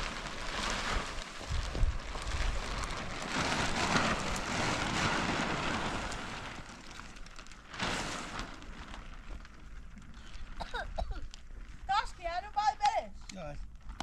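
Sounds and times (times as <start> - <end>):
wind buffeting microphone: 1.0 - 6.4.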